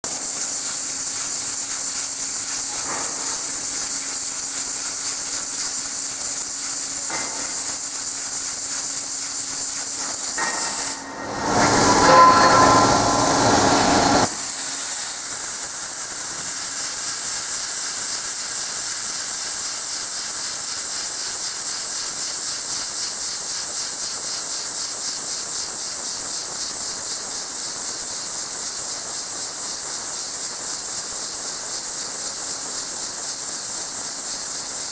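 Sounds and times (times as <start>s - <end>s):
drilling machine hiss and hum: 0.0s - 34.9s
rushing whine: 10.4s - 15.2s.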